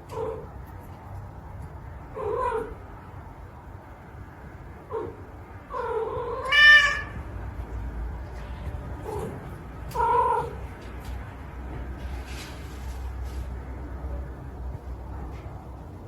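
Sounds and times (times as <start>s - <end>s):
cat meowing: 5.7s - 7.2s.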